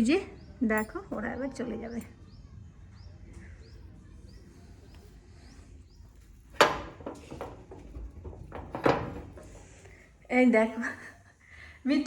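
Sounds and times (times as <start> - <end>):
ringing clatter: 6.5 - 9.8.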